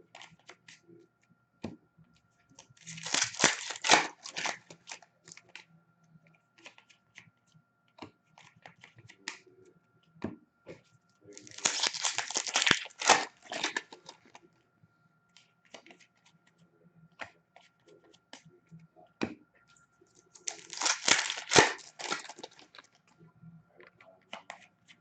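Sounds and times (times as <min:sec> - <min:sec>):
cards clicking and rustling: 0:02.6 - 0:05.6, 0:11.4 - 0:14.4, 0:20.3 - 0:23.0
wrappers tearing and crinkling: 0:02.8 - 0:05.0, 0:11.4 - 0:14.1, 0:20.3 - 0:22.9.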